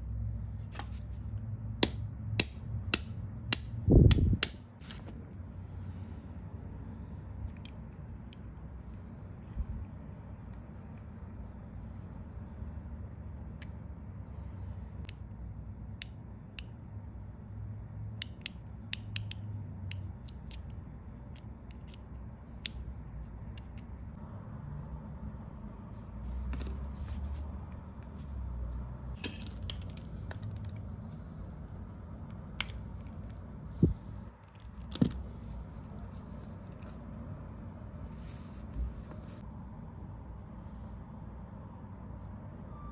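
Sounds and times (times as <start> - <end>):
steady low hum: 0.0 - 42.8
hand tools clicking and tapping: 1.8 - 5.1.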